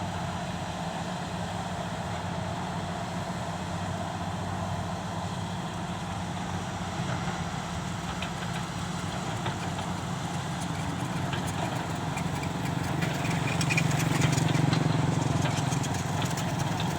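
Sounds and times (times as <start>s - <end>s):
excavator diesel engine running: 6.2s - 16.9s
clicks and rattles: 8.1s - 16.9s.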